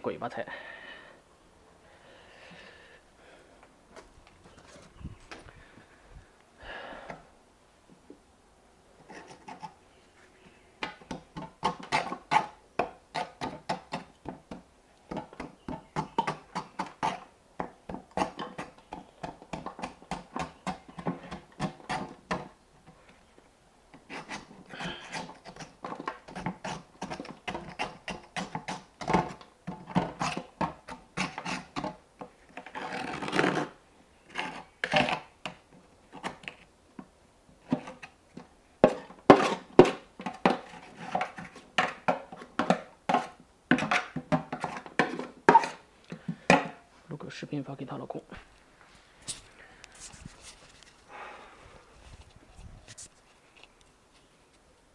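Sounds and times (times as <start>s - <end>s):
hand tools scraping and tapping: 9.0s - 9.8s, 10.4s - 23.2s, 23.9s - 46.9s.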